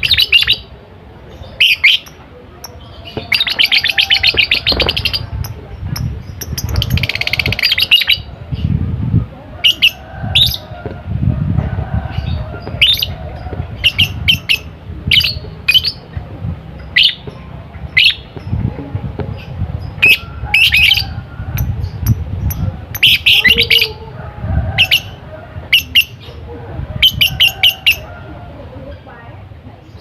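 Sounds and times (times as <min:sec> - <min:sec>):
lovebird chirping: 0:00.0 - 0:08.3, 0:13.8 - 0:16.1
low rumbling noise: 0:00.0 - 0:30.0.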